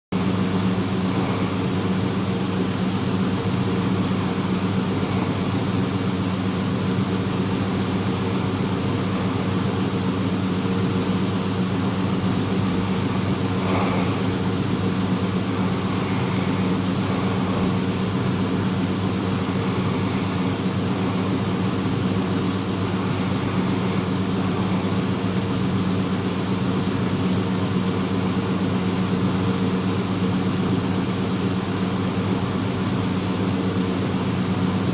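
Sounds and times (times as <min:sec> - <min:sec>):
loud steady hum: 0:00.2 - 0:34.9
person snoring: 0:00.8 - 0:25.6.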